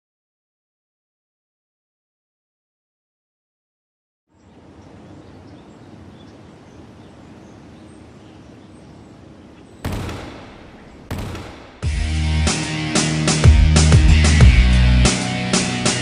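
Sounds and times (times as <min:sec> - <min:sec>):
steady background noise: 0:04.3 - 0:11.9
sudden loud bangs: 0:09.9 - 0:12.4.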